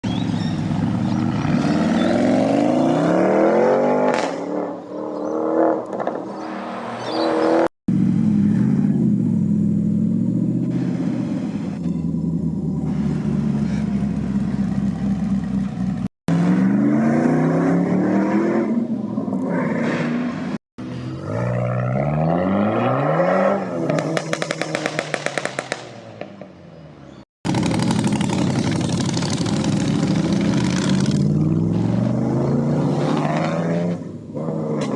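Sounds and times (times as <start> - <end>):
car engines revving and accelerating: 0.1 - 34.9
exhaust crackles and pops: 24.0 - 26.4.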